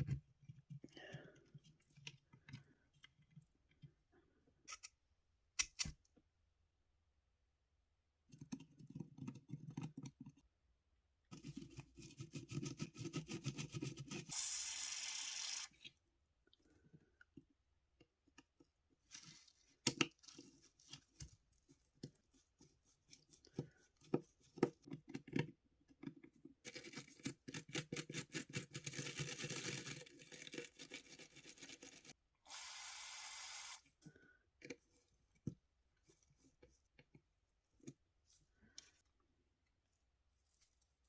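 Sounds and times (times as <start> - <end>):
clicks and scrapes on model car: 11.3 - 14.6, 18.4 - 32.2.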